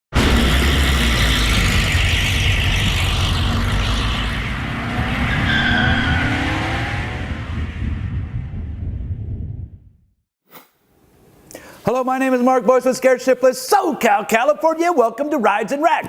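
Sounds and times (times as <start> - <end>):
car engine revving: 0.1 - 9.1.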